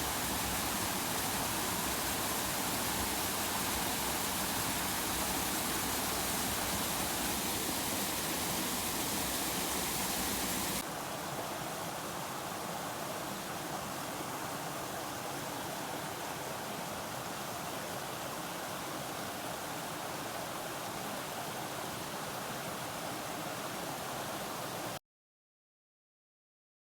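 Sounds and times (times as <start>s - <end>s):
waterfalls rushing: 0.0s - 10.8s.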